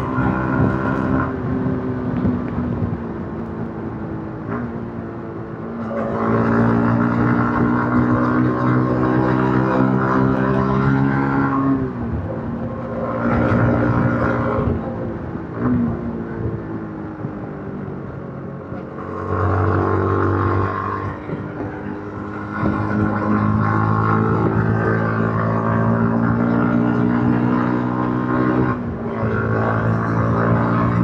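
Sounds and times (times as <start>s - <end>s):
motorcycle engine revving: 0.0s - 3.0s, 5.8s - 16.5s, 18.7s - 31.0s.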